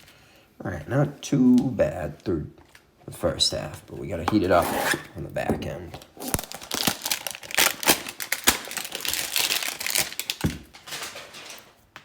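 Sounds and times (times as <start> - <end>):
card packaging crinkling and rustling: 6.0 - 12.0.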